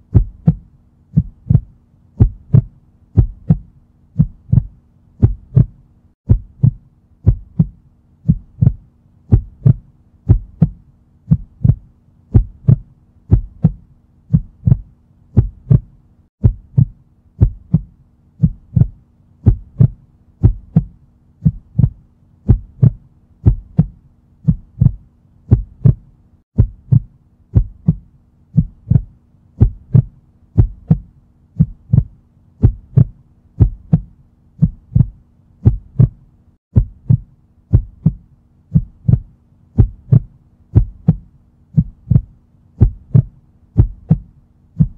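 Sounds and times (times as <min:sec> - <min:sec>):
heartbeat double thumps: 0:00.0 - 0:44.9.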